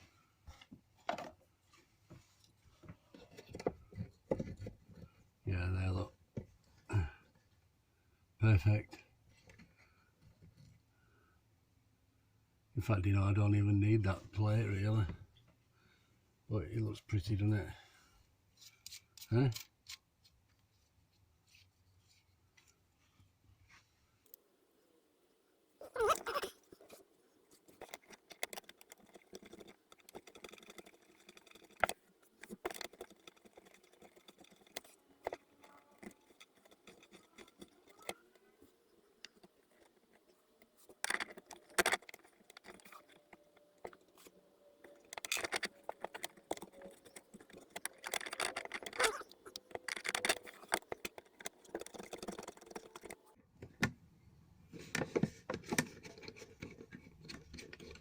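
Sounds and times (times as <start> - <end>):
small parts and tools handled: 25.8 - 53.4.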